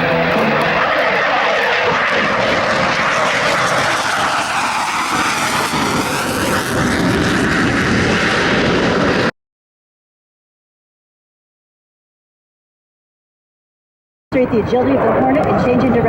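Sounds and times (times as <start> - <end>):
fighter jet roar: 0.0 - 9.3.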